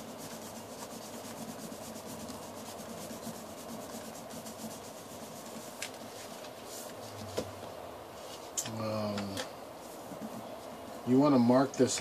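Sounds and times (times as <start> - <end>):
fingers rubbing paper: 0.0 - 5.9.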